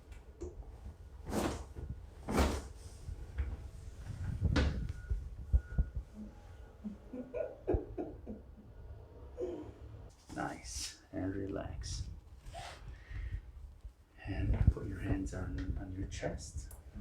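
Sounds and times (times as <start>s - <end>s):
swishing rustles: 0.8s - 6.0s.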